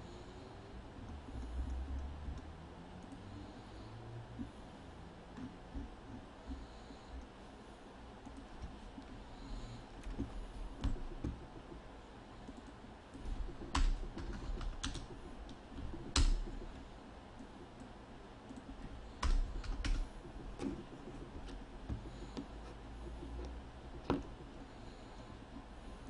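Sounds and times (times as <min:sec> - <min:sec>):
computer keyboard taps: 0:12.5 - 0:16.6.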